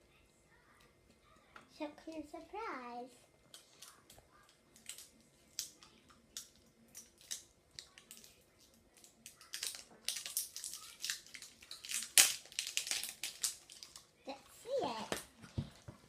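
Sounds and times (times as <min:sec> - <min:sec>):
packaging crinkling and crackling: 0:03.6 - 0:14.2.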